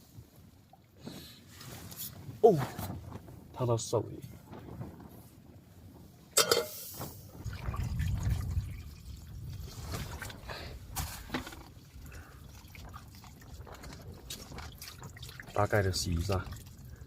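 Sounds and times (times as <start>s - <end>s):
water pouring and sloshing: 4.5s - 17.0s.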